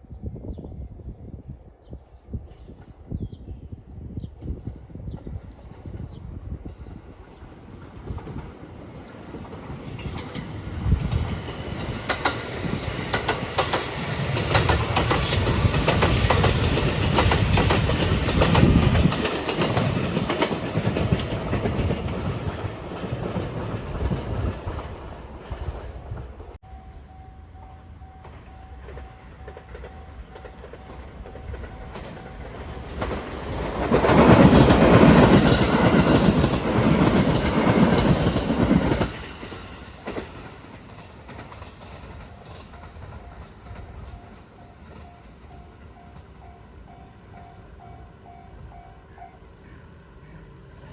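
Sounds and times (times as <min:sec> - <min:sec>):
train wheels clicking over rail joints: 0:09.2 - 0:26.5, 0:28.2 - 0:48.0
level crossing warning bell: 0:42.4 - 0:49.4.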